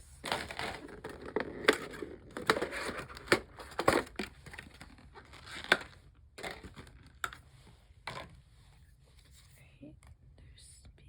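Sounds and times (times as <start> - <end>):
plastic packaging crinkling and tearing: 0.2 - 7.2.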